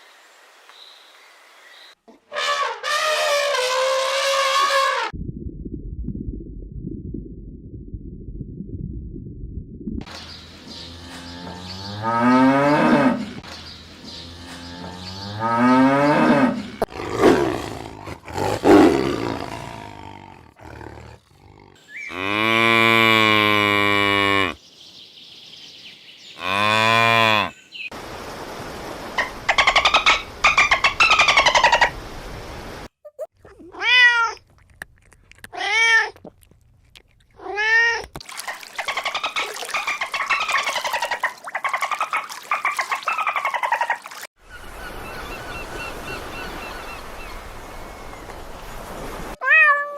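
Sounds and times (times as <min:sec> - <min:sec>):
cat meows: 0:49.4 - 0:49.9.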